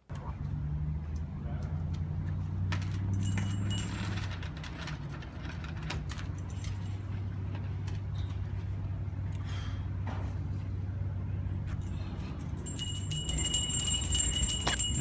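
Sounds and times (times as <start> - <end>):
vehicle engine hum: 0.0 - 15.0
metal hand bell ringing: 3.0 - 4.5, 11.8 - 15.0.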